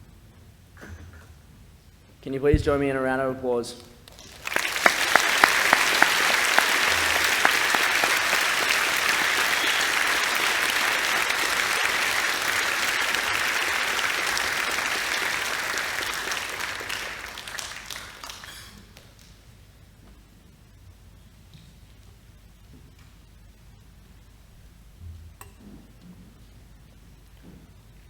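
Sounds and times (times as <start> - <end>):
audience applauding: 4.1 - 19.3.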